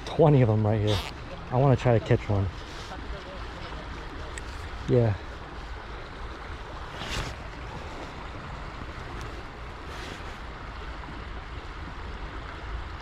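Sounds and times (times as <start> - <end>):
flowing creek water: 0.0 - 13.0.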